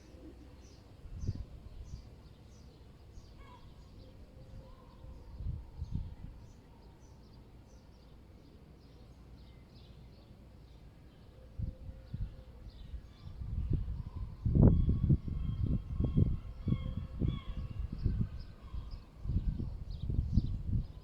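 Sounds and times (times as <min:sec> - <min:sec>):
small birds chirping: 0:00.0 - 0:11.4
low city rumble: 0:00.0 - 0:21.0
wind buffeting microphone: 0:01.0 - 0:02.2, 0:04.4 - 0:06.6, 0:11.6 - 0:21.0.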